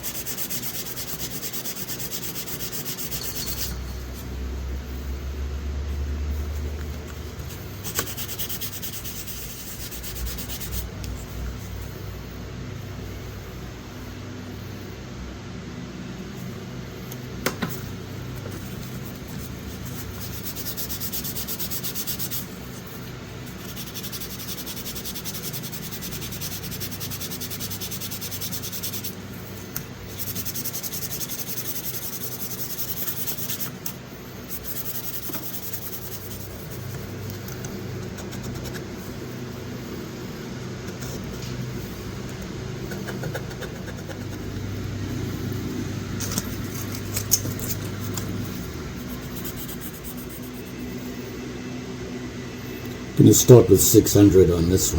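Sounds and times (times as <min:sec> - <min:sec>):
sandpaper rubbing on metal blade: 0:00.0 - 0:04.2, 0:07.8 - 0:10.9, 0:18.6 - 0:29.2, 0:30.1 - 0:37.1, 0:46.2 - 0:50.9.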